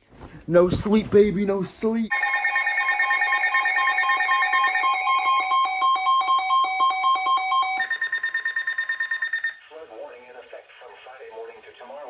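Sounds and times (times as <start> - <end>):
overlapping pulsing alarm beeps: 2.1 - 9.6.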